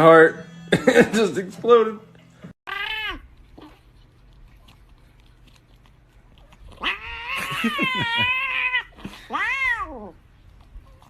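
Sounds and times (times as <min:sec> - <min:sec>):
cat meowing: 0:02.7 - 0:03.3, 0:06.8 - 0:10.2.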